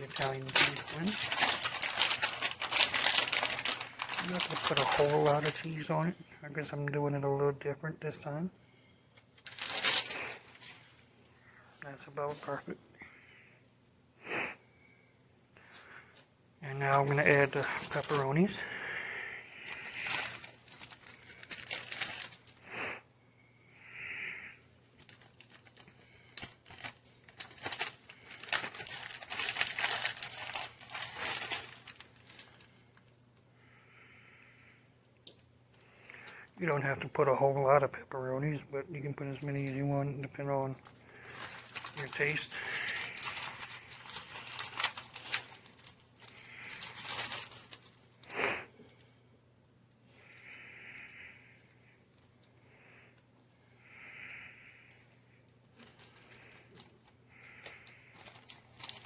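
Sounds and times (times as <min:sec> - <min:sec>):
plastic packaging crinkling: 0:00.0 - 0:06.1, 0:09.3 - 0:11.0, 0:16.7 - 0:18.6, 0:19.5 - 0:22.6, 0:24.9 - 0:33.1, 0:38.5 - 0:48.3, 0:55.0 - 0:59.0.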